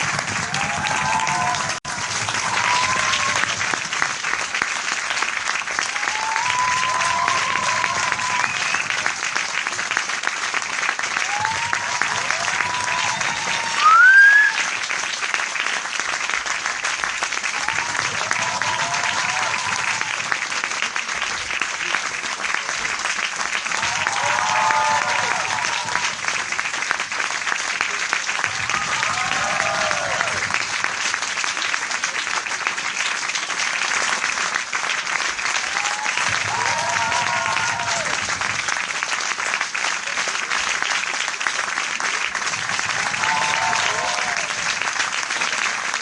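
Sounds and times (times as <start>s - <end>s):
crowd clapping: 0.0s - 46.0s
whooping cheers: 0.1s - 3.8s, 5.8s - 9.4s, 11.1s - 14.7s, 17.4s - 20.4s, 23.7s - 26.4s, 28.4s - 30.6s, 35.4s - 38.4s, 42.6s - 45.1s
loud rising whistle: 13.7s - 14.6s.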